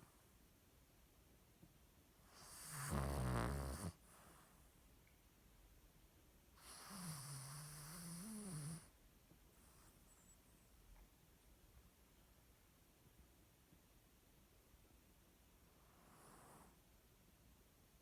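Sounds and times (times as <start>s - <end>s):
dog snoring: 2.3s - 4.5s, 6.6s - 8.9s, 15.9s - 16.8s.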